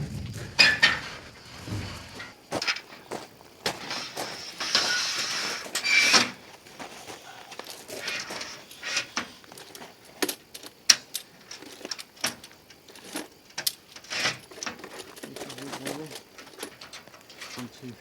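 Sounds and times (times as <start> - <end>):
metal tools clinking: 0.6 - 6.6, 7.3 - 17.9.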